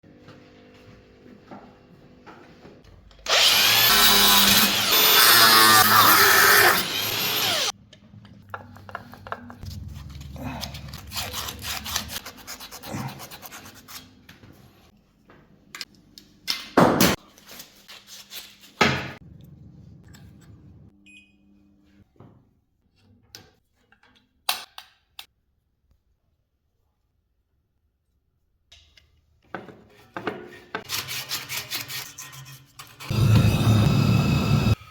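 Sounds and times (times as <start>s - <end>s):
power tool running: 3.3s - 7.7s, 33.1s - 34.8s.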